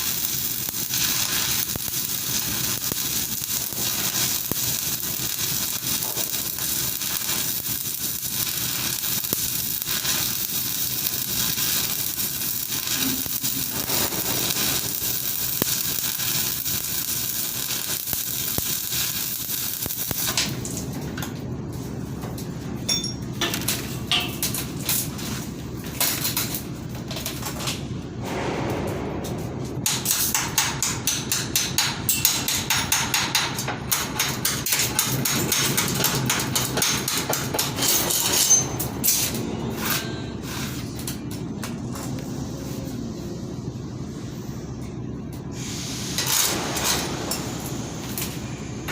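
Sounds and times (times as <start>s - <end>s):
arc welding crackling hiss: 0.0s - 20.8s, 45.5s - 48.9s.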